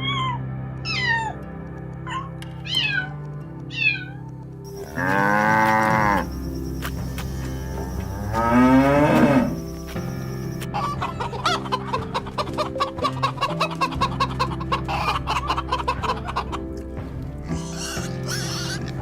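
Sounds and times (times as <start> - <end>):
background music: 0.0 - 19.0
hens clucking: 4.7 - 19.0
cow mooing: 4.8 - 6.3, 7.6 - 9.7.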